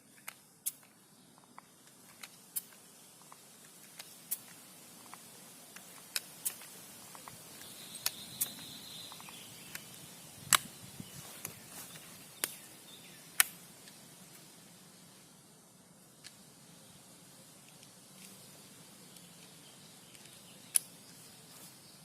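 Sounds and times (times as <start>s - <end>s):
faint high buzz: 0.0s - 22.0s
faint outdoor hiss: 0.0s - 22.0s
sharp clicks and snaps: 0.1s - 10.7s, 11.4s - 12.6s, 13.3s - 14.0s, 17.6s - 18.4s, 19.1s - 21.0s.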